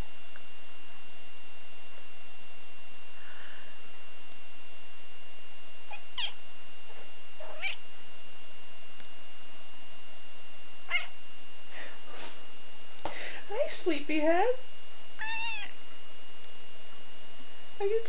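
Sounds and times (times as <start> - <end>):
kitten mewing: 5.9 - 6.4, 7.4 - 7.8, 10.9 - 11.2, 15.2 - 15.8.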